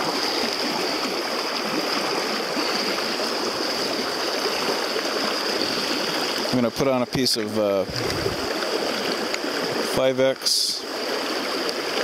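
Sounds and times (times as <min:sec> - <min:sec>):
stream rushing over rocks: 0:00.0 - 0:12.0.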